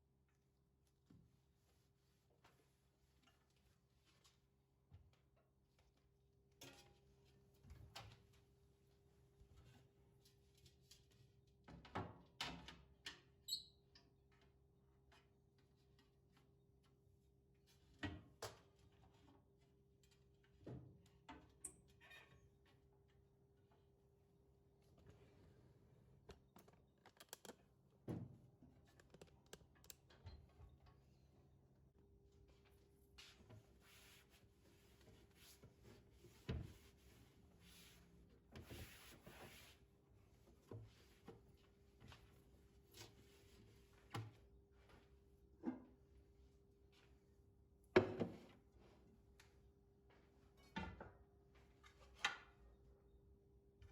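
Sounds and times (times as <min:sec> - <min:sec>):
soft rubbing or wiping: 0:33.8 - 0:39.8.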